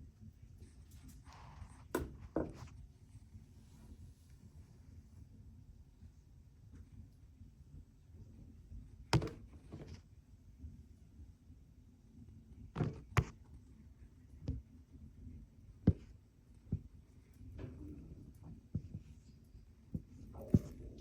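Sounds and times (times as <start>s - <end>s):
thuds and knocks: 15.8s - 16.1s.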